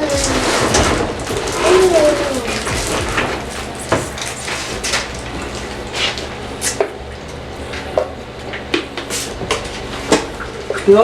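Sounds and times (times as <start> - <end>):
objects knocking and clattering: 0.0 - 6.9.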